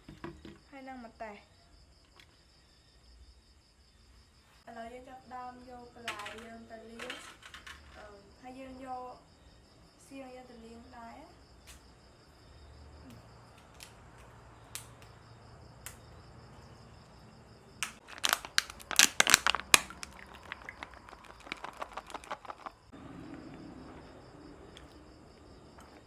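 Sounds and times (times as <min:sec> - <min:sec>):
crickets chirping: 0:00.0 - 0:26.0
sharp crackling and snapping: 0:13.0 - 0:15.2, 0:17.8 - 0:22.9.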